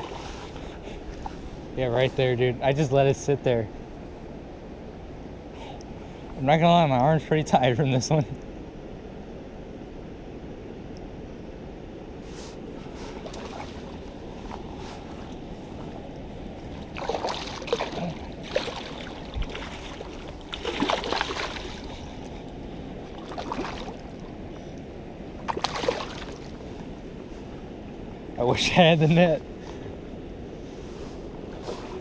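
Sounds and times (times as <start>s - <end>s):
water rushing: 0.0s - 3.4s, 12.7s - 29.4s
fish splashing at surface: 16.9s - 21.9s, 25.5s - 26.5s.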